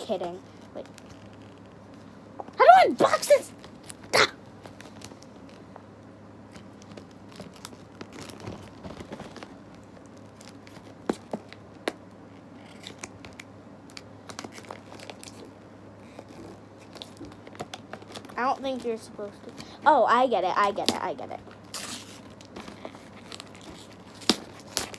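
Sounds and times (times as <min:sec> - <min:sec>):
hands scratching at package wrapping: 0:21.7 - 0:24.9.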